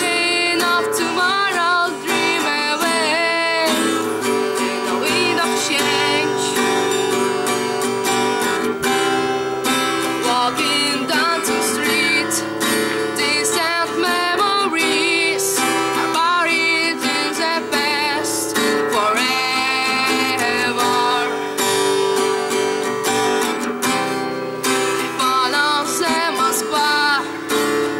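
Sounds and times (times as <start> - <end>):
woman singing with vibrato: 0.0 - 7.3, 9.9 - 21.6, 25.0 - 27.7
acoustic guitar strumming: 0.0 - 27.9.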